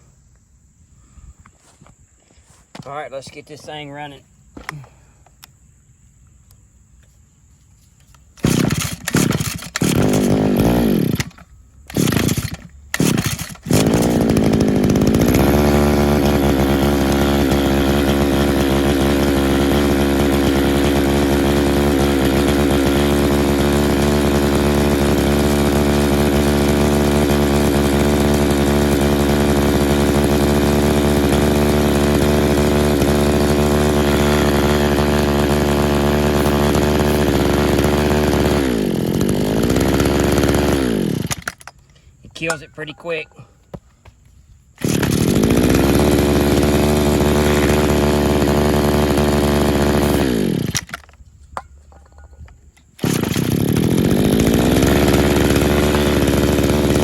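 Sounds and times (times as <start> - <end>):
small two-stroke engine idling: 8.4 - 41.6, 44.8 - 51.1, 53.0 - 57.0.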